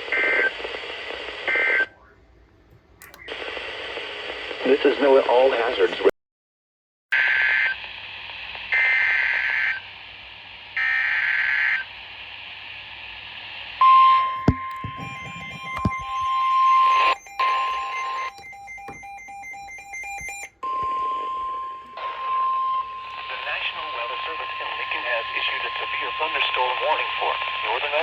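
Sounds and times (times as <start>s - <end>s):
radio hiss: 3.2s - 6.1s, 23.0s - 28.0s
steady warning alarm tone: 14.4s - 24.0s
fast electronic beeping: 14.5s - 20.5s.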